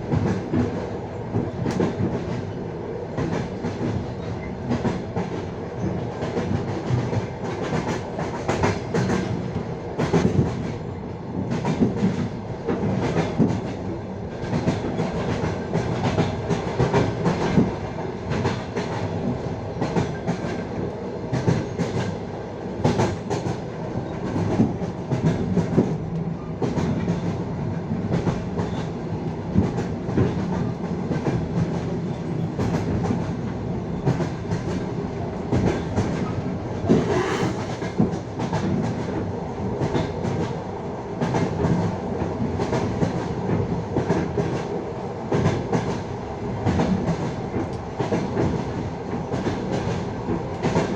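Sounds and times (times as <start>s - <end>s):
train wheels clattering over rail joints: 3.2s - 10.7s, 35.5s - 40.6s.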